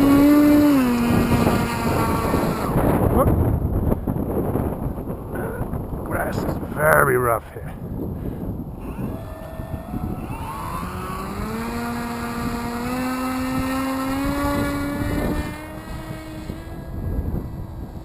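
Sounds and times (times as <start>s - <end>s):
model airplane motor whine: 0.0s - 4.2s, 8.8s - 18.0s
wind rumbling on microphone: 0.0s - 18.0s.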